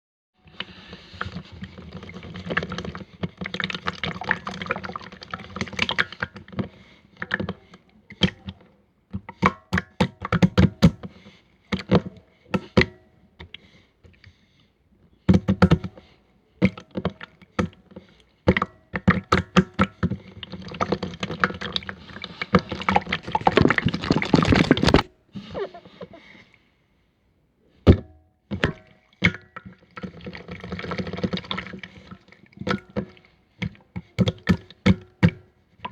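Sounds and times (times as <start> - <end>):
slime squishing: 20.4 - 25.1.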